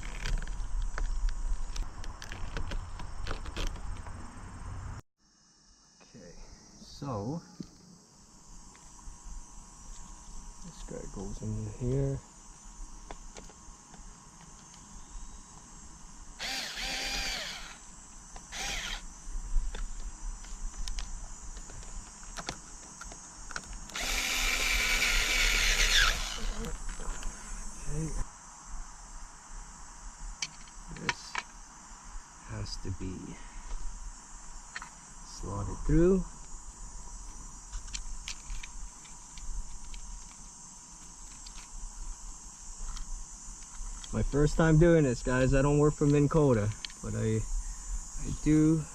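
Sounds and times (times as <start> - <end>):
steady high-pitched hiss: 0.0 - 48.9
power drill whining: 16.4 - 19.1, 23.9 - 26.9.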